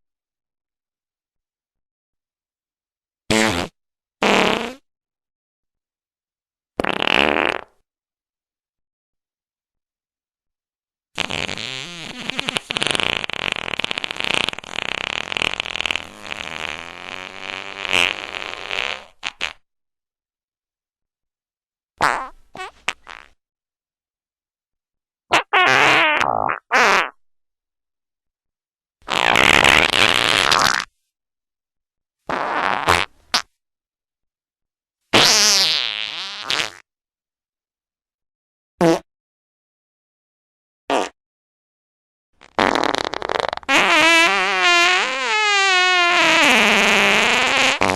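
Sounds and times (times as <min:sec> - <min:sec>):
long fluttering fart: 0:03.3 - 0:04.9, 0:06.8 - 0:07.8, 0:11.2 - 0:19.7, 0:22.0 - 0:23.4, 0:25.3 - 0:27.2, 0:29.1 - 0:30.9, 0:32.3 - 0:33.5, 0:35.1 - 0:36.9, 0:42.4 - 0:47.9.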